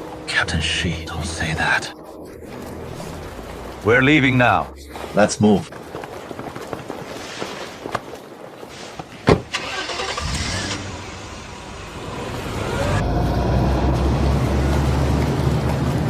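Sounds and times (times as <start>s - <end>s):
car engine starting and running: 9.5s - 16.0s.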